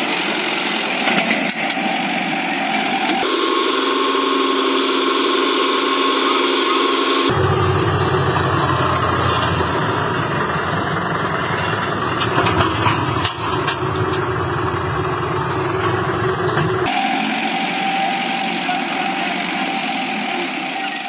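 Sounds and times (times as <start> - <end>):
tractor diesel engine running: 0.0 - 7.3, 16.8 - 21.0.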